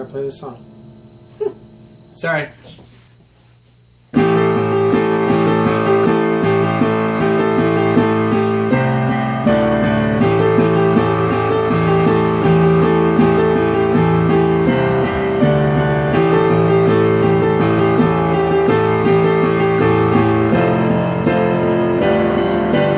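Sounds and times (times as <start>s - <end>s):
keyboard playing chords: 4.1s - 22.9s.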